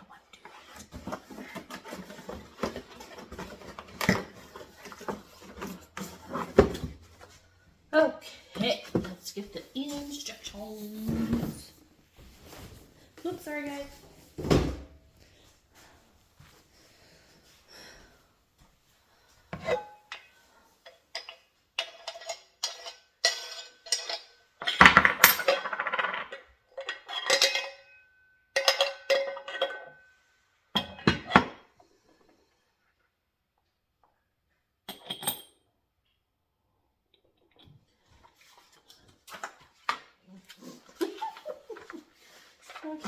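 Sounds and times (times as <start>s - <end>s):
metal parts clinking and clanking: 21.1s - 27.9s, 28.6s - 29.9s, 34.9s - 35.6s.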